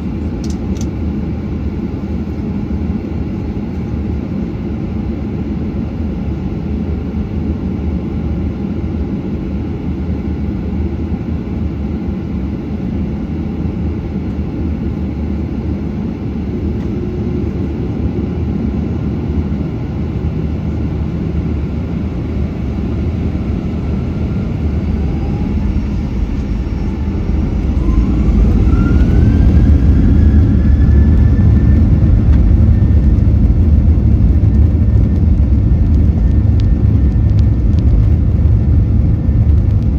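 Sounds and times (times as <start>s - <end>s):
jet engines rumbling in cabin: 0.0s - 39.9s
jet engines spooling up: 9.7s - 39.9s.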